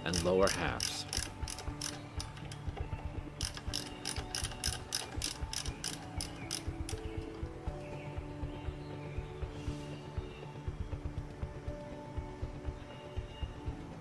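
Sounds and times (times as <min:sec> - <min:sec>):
faint background music: 0:00.0 - 0:14.0
socket ratchet clicking: 0:00.1 - 0:02.7, 0:03.4 - 0:07.4.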